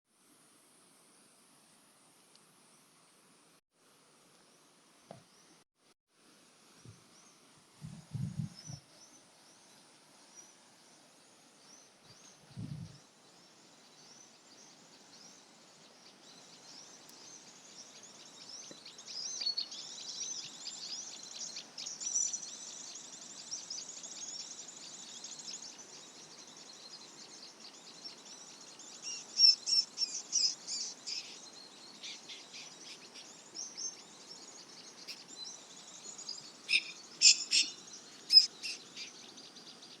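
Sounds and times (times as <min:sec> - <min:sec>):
high thin rapid bird chirps: 0:36.7 - 0:39.1.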